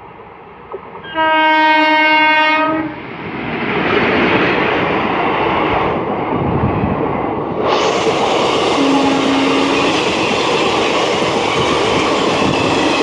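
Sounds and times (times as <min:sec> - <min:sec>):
train rushing past: 0:00.0 - 0:13.0
train horn blast: 0:01.0 - 0:03.0, 0:08.8 - 0:09.9.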